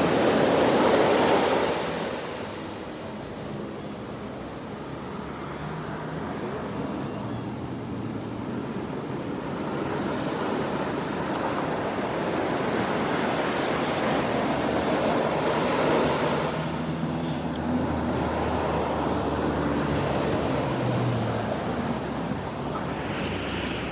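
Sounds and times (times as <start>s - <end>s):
ocean surf washing: 0.0s - 3.1s, 9.0s - 23.9s.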